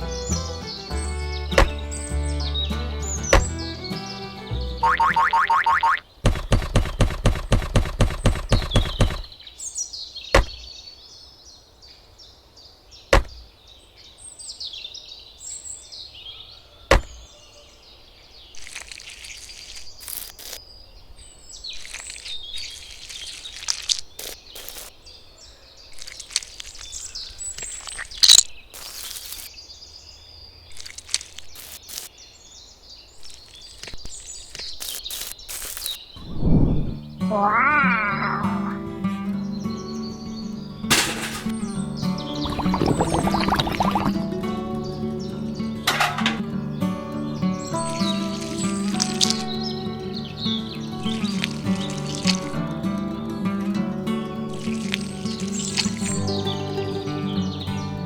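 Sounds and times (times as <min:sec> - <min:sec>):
birds chirping: 0:00.0 - 0:58.0
sharp knocks: 0:06.2 - 0:09.3, 0:10.4 - 0:10.7, 0:13.1 - 0:13.4
rustling: 0:18.6 - 0:20.6, 0:21.6 - 0:25.0, 0:25.9 - 0:29.5, 0:30.6 - 0:32.1, 0:33.2 - 0:36.0, 0:40.9 - 0:41.8, 0:47.6 - 0:49.7, 0:51.0 - 0:52.6, 0:54.5 - 0:56.3.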